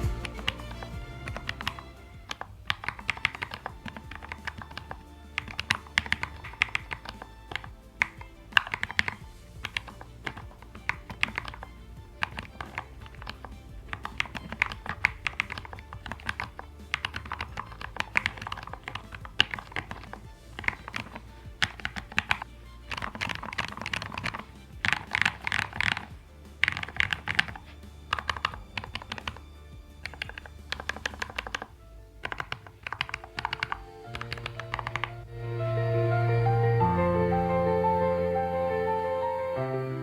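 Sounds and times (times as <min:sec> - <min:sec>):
mechanical keyboard keystroke clicks: 0:30.0 - 0:35.1.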